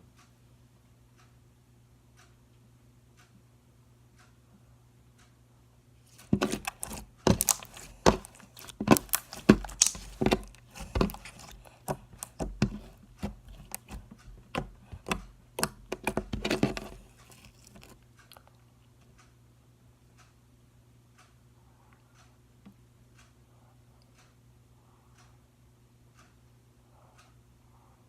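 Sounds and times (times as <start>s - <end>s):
slime squishing and popping: 6.2s - 17.9s.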